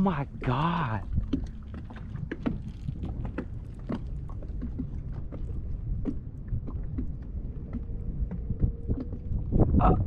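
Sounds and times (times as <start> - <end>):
small knocks and splashes: 0.0 - 9.7
boat engine rumble: 0.0 - 10.0.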